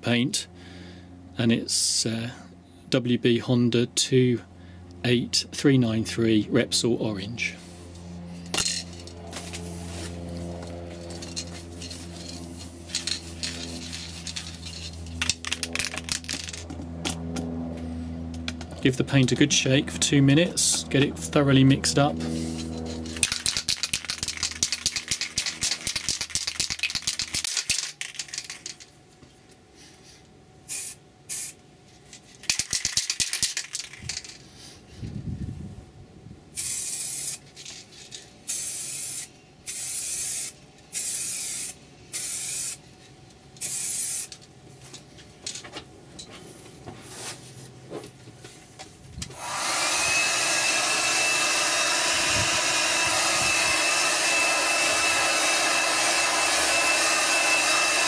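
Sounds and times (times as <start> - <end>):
aerosol can ball rattling: 11.3 - 16.7, 23.1 - 28.8, 32.4 - 34.4
spray can hissing: 30.7 - 31.6, 36.6 - 37.4, 38.5 - 42.8, 43.6 - 44.4
heat gun whining: 49.2 - 58.0.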